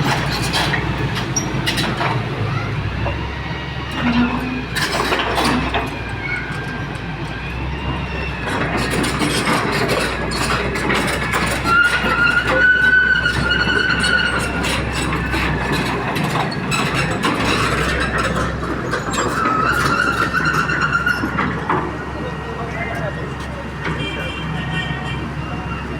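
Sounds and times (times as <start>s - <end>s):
excavator diesel engine: 0.0s - 25.9s
high steel-on-steel squeal: 3.2s - 6.8s, 7.5s - 21.5s.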